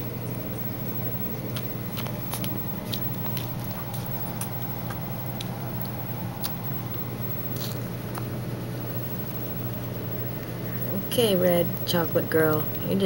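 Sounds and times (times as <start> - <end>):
steady low hum: 0.0 - 13.0
puppies chewing: 0.8 - 9.6.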